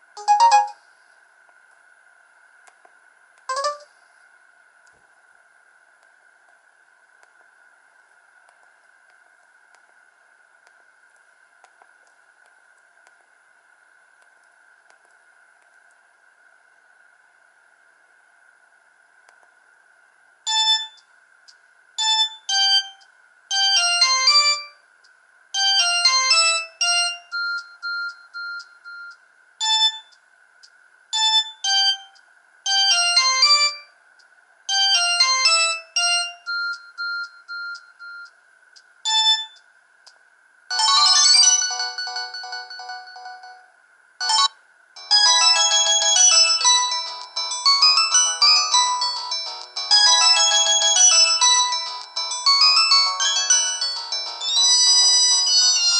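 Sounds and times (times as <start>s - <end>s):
faint high whine: 0.0s - 55.9s
phone ringtone melody: 0.2s - 0.8s, 3.5s - 3.9s, 22.0s - 24.8s, 25.6s - 28.6s, 32.7s - 33.9s, 34.7s - 37.8s, 40.7s - 55.9s.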